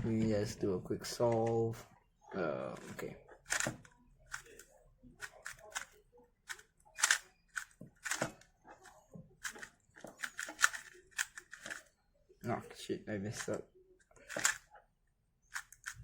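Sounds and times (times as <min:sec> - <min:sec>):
speed cube plastic clicks: 0:03.5 - 0:08.5, 0:09.4 - 0:11.9, 0:14.2 - 0:14.7, 0:15.5 - 0:16.0.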